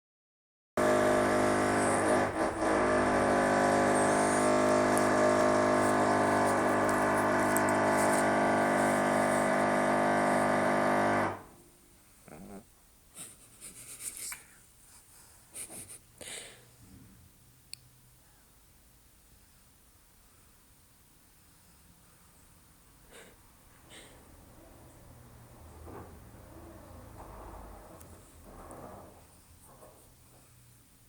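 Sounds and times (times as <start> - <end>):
dog snoring: 1.5 - 10.5, 12.2 - 12.7.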